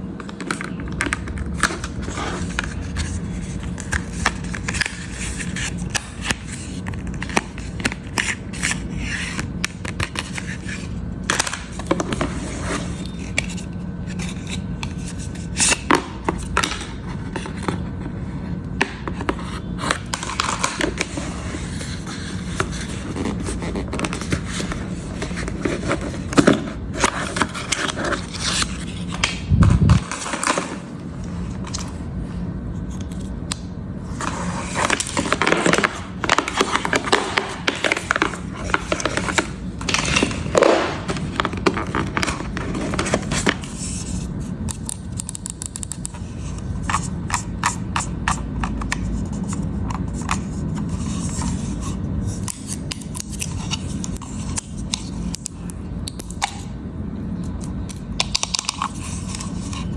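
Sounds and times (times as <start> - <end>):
cardboard and plastic crinkling: 34.2 - 43.8.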